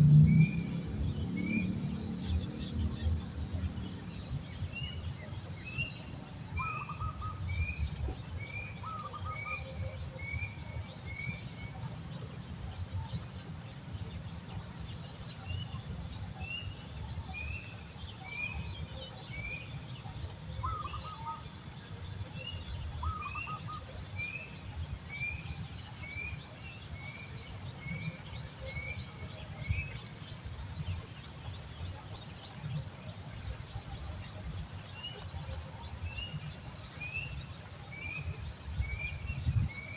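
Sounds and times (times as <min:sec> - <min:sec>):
low rumbling haze: 0:00.0 - 0:20.0
insect trilling: 0:00.0 - 0:39.9
bird chirping: 0:16.6 - 0:21.4.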